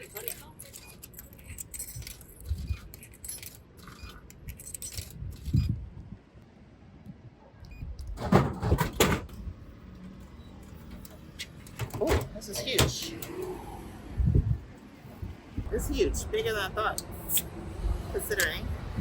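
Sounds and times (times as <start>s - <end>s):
coins clinking into vending machine: 0.0s - 5.2s.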